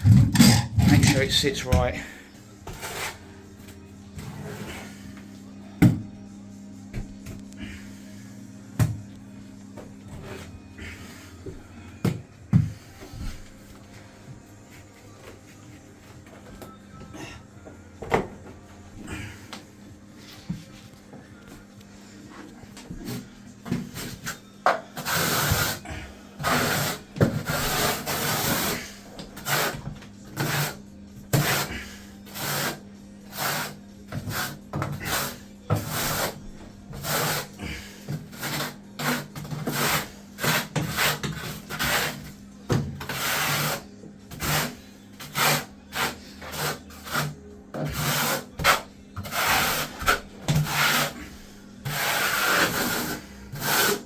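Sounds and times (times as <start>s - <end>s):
hand roller scraping over matting: 0.0s - 3.4s, 4.1s - 5.0s, 22.0s - 30.8s, 43.0s - 54.0s.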